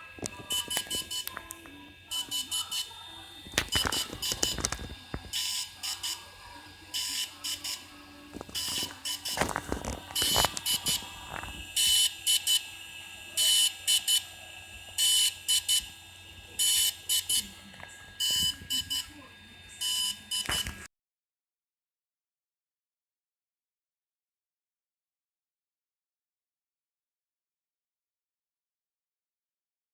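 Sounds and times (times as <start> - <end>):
drone beeping: 0.0 - 20.9.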